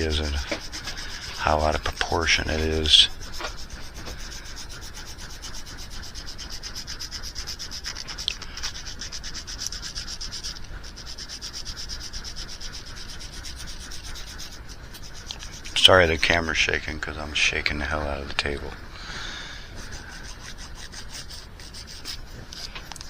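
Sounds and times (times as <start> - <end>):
rotary tool sanding plastic: 0.0 - 17.0, 19.6 - 23.0.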